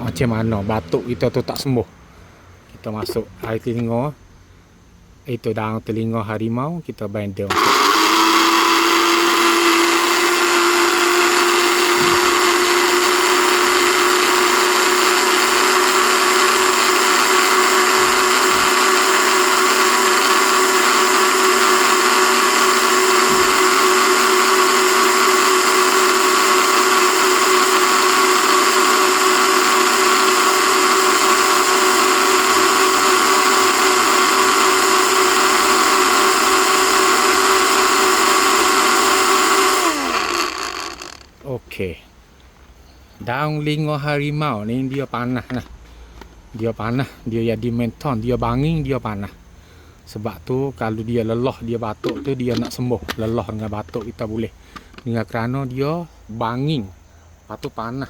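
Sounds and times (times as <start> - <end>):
blender motor whine: 7.5 - 41.4.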